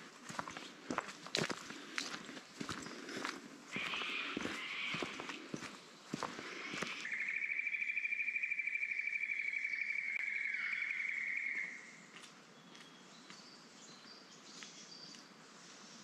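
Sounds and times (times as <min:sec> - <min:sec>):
footsteps on forest track: 0:00.0 - 0:07.2, 0:11.4 - 0:16.0.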